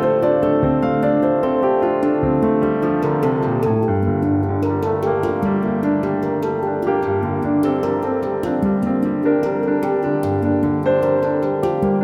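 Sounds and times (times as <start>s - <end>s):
soft piano instrumental music: 0.0s - 12.0s.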